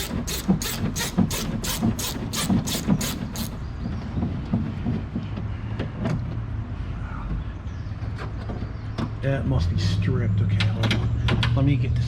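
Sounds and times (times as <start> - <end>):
socket ratchet ratcheting: 0.0 - 3.5.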